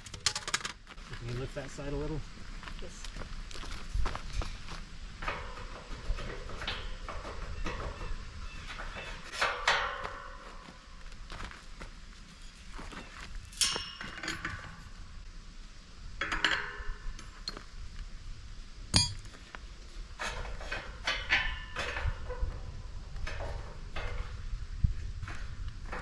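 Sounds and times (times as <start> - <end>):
metal gate clinking and clanking: 4.4 - 10.8, 12.9 - 15.0, 16.2 - 17.6, 19.0 - 19.3, 20.2 - 24.5.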